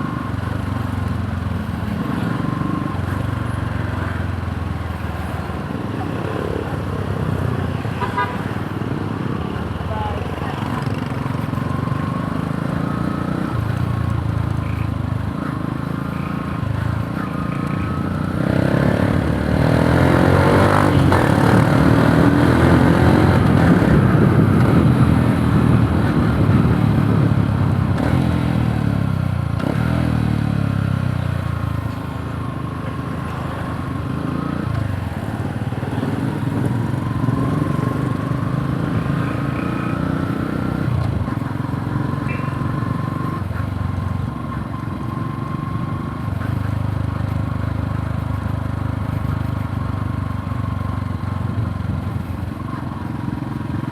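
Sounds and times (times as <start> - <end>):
motorcycle engine revving: 14.6 - 50.0.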